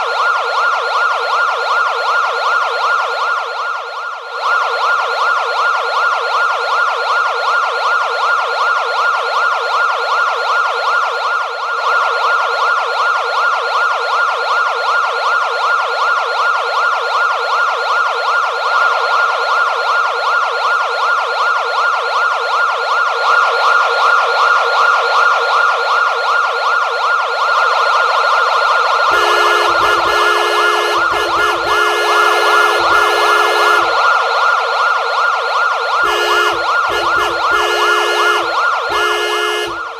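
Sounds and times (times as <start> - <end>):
police siren warbling yelp: 0.0 - 39.9
steady horn-like tones: 29.1 - 34.0, 36.0 - 39.8.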